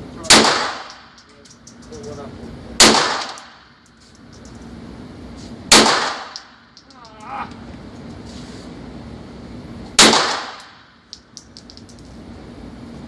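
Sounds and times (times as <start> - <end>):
pistol shots: 0.3 - 1.2, 2.8 - 3.7, 5.7 - 6.6, 10.0 - 10.8.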